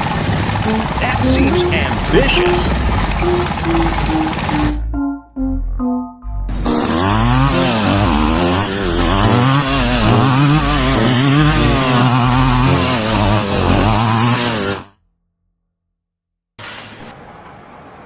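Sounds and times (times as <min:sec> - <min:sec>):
small engine revving: 0:00.0 - 0:01.8, 0:02.7 - 0:04.8, 0:06.6 - 0:15.0.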